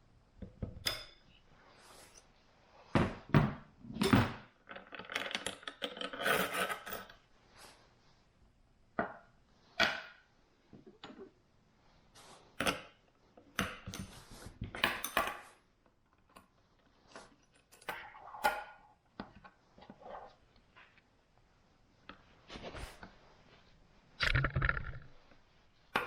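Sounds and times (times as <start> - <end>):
metal tools clinking and scraping: 5.0 - 7.1.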